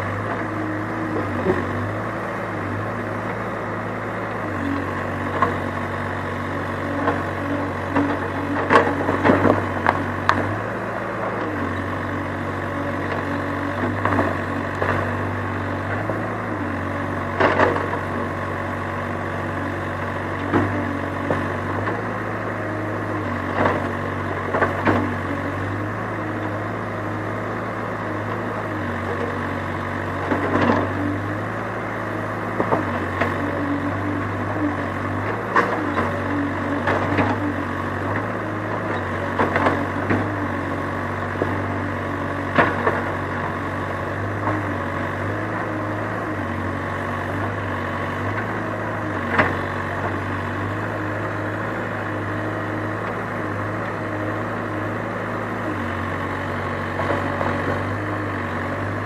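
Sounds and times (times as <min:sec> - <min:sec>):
excavator engine running: 0:00.0 - 0:59.0.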